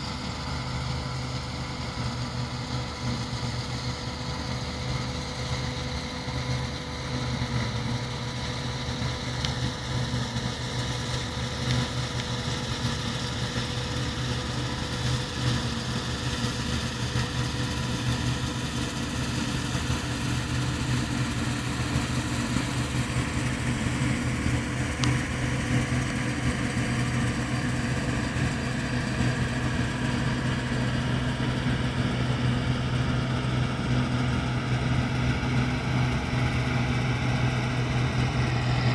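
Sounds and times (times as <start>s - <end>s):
combine harvester droning: 0.0s - 38.9s.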